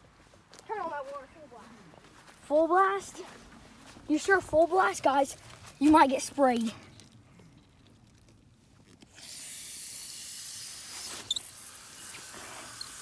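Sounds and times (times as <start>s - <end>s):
garden hose water spraying: 9.0s - 13.0s.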